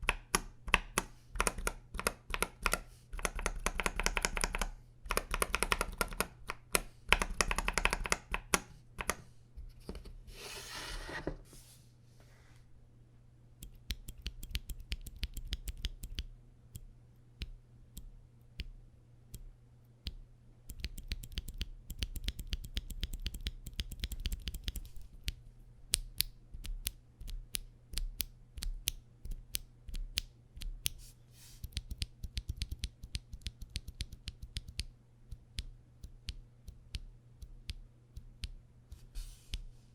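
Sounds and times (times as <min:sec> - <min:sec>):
typing on mechanical keyboard: 0:00.0 - 0:09.2.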